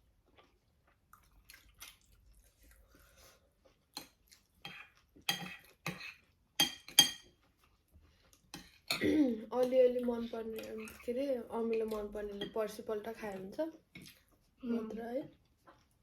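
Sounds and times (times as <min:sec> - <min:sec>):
soft eating sounds: 0:00.0 - 0:16.0
cutlery clinking on plates: 0:04.0 - 0:07.4.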